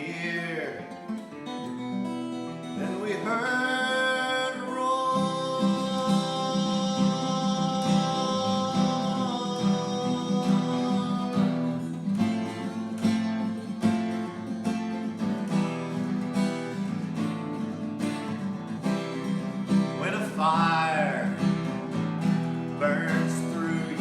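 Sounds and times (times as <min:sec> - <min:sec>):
person singing: 0:00.0 - 0:01.1, 0:02.7 - 0:13.0, 0:19.9 - 0:22.0, 0:22.7 - 0:24.0
acoustic guitar strumming: 0:00.0 - 0:24.0.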